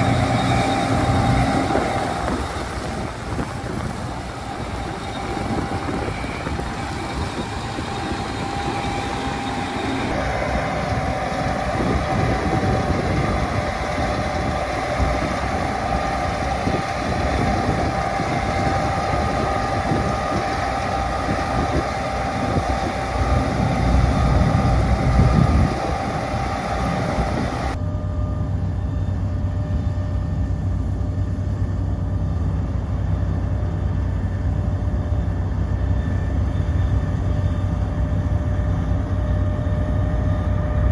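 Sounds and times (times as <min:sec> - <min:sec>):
machine whine: 0:00.0 - 0:31.4
combine harvester running: 0:00.0 - 0:40.9.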